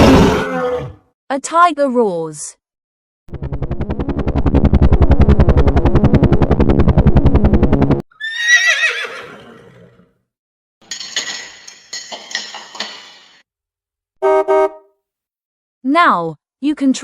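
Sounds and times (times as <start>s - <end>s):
horse whinnying: 0.0s - 1.0s, 8.1s - 10.0s
pulsing low rumble: 3.3s - 8.0s.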